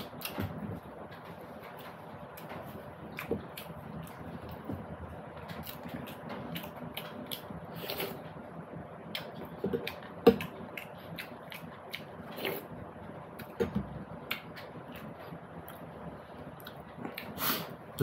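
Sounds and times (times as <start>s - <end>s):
person chewing food: 2.3s - 8.4s, 9.1s - 12.8s, 16.5s - 17.7s.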